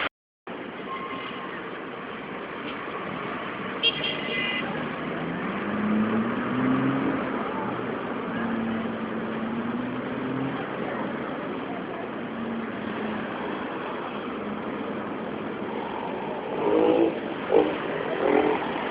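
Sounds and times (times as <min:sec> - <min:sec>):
traffic hum: 0:00.0 - 0:18.9
vehicles passing: 0:00.0 - 0:18.9.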